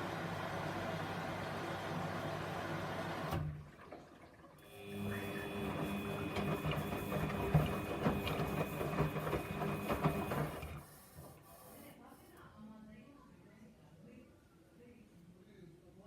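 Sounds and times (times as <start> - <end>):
washing machine motor hum: 0.0 - 11.1.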